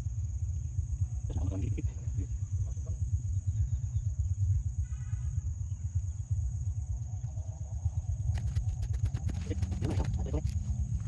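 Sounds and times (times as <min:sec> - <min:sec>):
wind buffeting microphone: 0:06.8 - 0:11.0.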